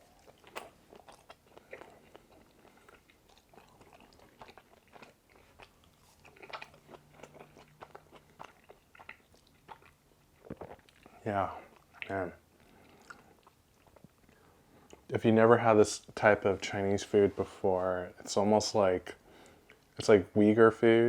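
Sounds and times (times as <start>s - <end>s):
chewing with wet mouth clicks: 0.0s - 15.1s, 19.4s - 20.0s.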